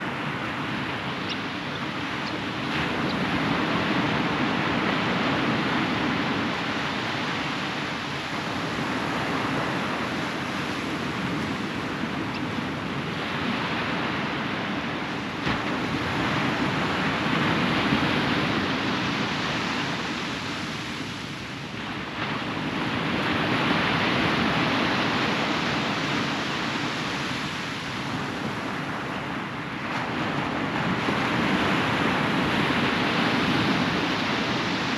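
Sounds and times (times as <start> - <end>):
ocean waves breaking on beach: 0.0 - 34.9
wind on microphone: 0.0 - 34.9.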